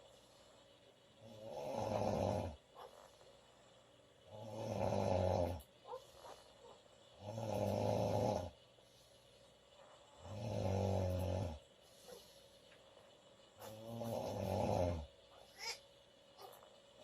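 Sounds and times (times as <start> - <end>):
quiet breathing: 0.0 - 17.0
woman snoring loudly: 1.2 - 2.6, 4.3 - 5.6, 7.2 - 8.6, 10.2 - 11.6, 13.7 - 15.1.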